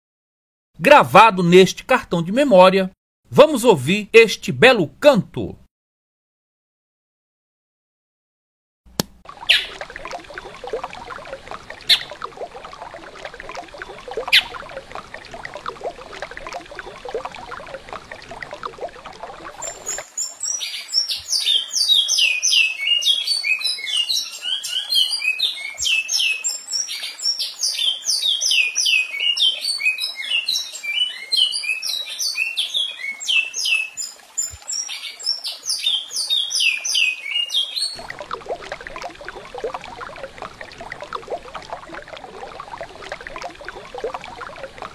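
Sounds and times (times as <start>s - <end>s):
recorded birdsong whistles: 11.9s - 12.1s, 19.6s - 27.0s.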